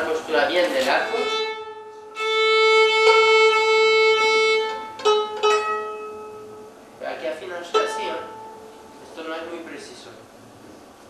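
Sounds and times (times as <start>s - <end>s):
violin bowed notes: 0.9s - 6.8s, 7.5s - 9.5s.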